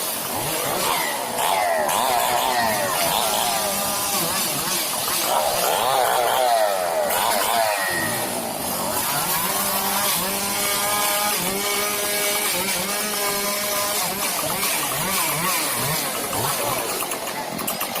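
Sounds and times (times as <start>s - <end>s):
chainsaw engine revving: 0.0s - 18.0s.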